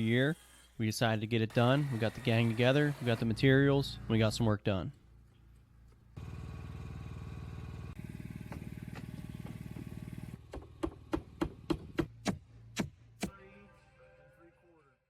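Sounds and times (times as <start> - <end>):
small engine running: 6.2 - 10.5
hammer striking nails: 8.5 - 13.3.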